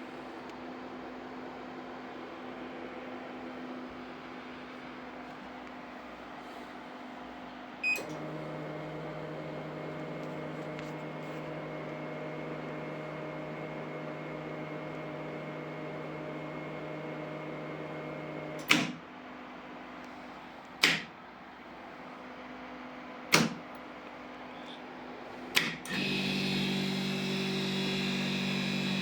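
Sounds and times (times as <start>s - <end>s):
electrical hum with high whine: 0.0s - 29.0s
loud sharp snap: 18.6s - 19.0s, 20.8s - 21.2s, 23.3s - 23.6s.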